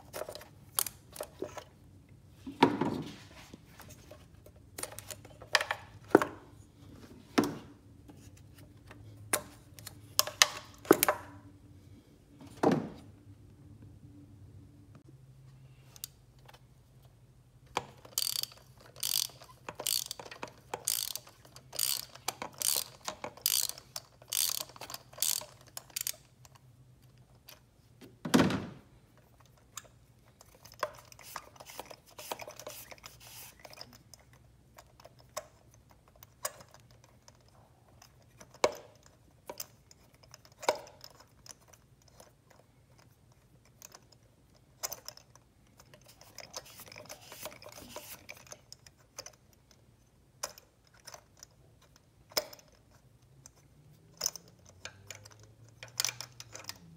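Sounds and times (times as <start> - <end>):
ratchet wrench clicking: 17.9 - 26.6.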